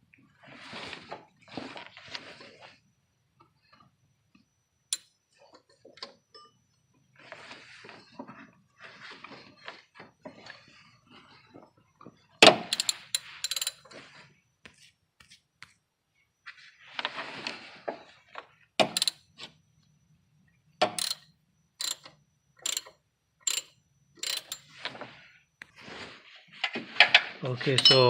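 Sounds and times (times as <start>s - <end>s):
ratchet wrench clicking: 12.7s - 13.8s, 18.8s - 19.2s, 21.0s - 21.2s, 21.8s - 22.9s, 23.5s - 24.6s.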